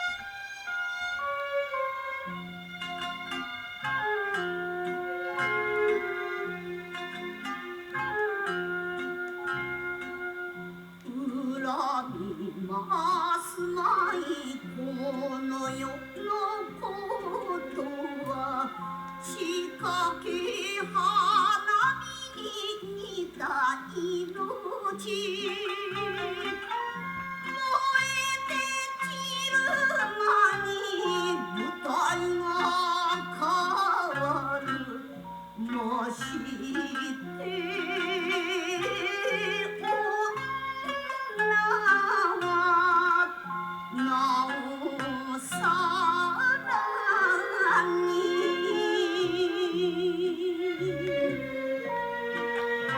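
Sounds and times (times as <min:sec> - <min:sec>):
woman singing with vibrato: 0:11.0 - 0:52.0.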